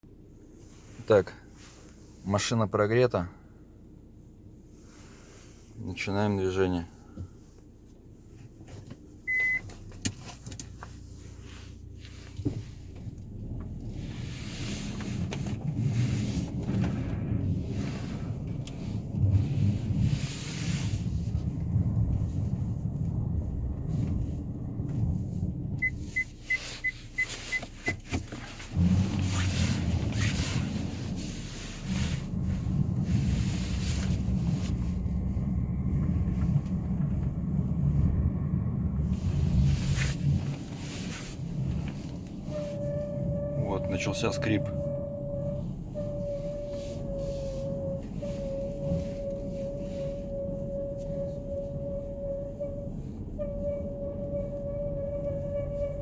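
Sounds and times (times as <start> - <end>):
car engine and road noise: 0.0 - 56.0
quick beeps: 9.3 - 9.7, 25.8 - 28.0.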